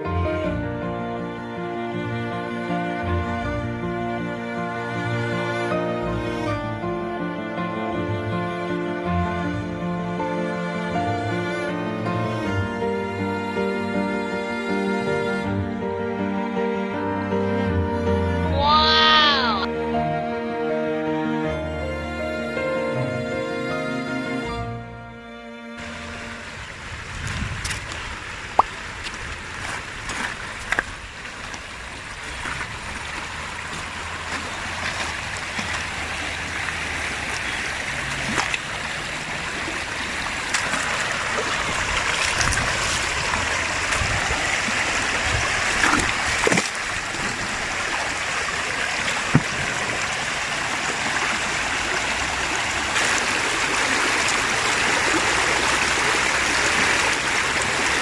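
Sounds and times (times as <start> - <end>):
water rushing over rocks: 25.8 - 58.0.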